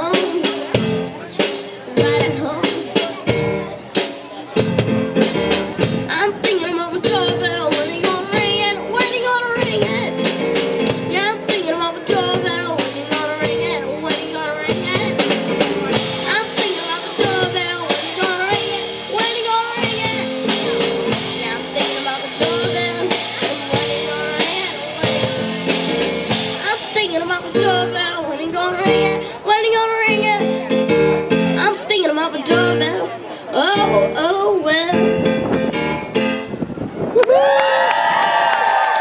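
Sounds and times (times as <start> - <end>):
drums beating: 0.0 - 28.0
rock band playing: 0.0 - 36.6.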